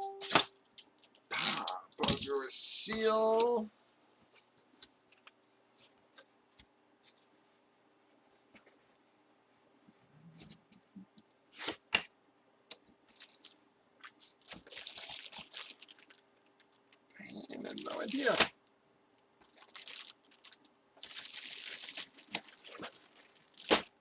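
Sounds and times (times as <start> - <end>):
packaging rustling: 13.1 - 18.6, 19.4 - 24.0.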